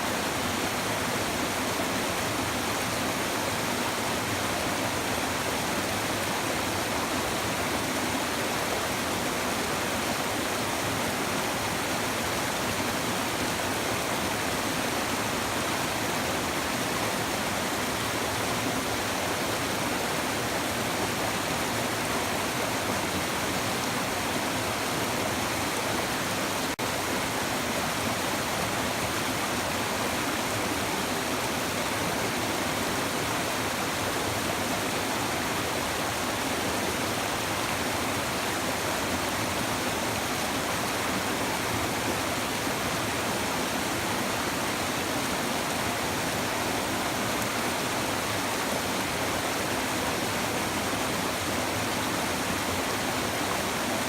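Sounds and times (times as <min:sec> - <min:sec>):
river babbling: 0:00.0 - 0:54.0.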